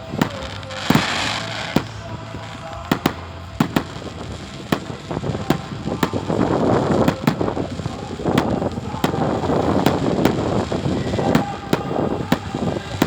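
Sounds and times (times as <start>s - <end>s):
fireworks bangs: 0.0s - 13.0s.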